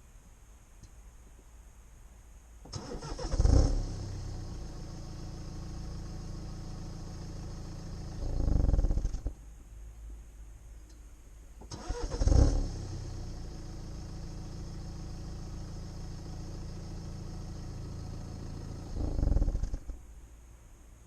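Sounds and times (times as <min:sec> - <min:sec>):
diesel engine starting and idling: 0:02.7 - 0:09.4, 0:11.6 - 0:20.0.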